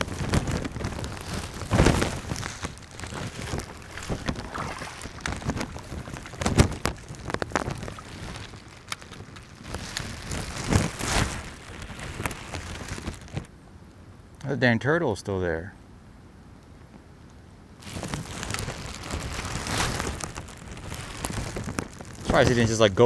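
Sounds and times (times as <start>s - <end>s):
water sloshing around wading person: 0.0s - 13.5s, 17.8s - 22.8s
wind rumbling on microphone: 0.0s - 13.5s, 17.8s - 23.0s.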